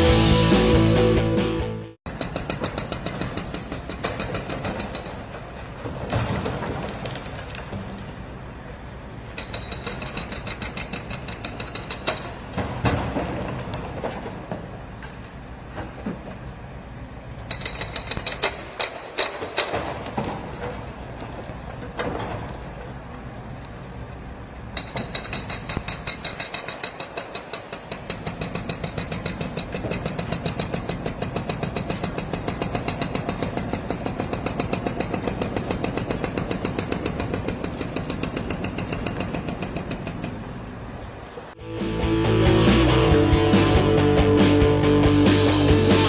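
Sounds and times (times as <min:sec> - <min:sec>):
heavy equipment engine pulsing: 0:41.6 - 0:46.0.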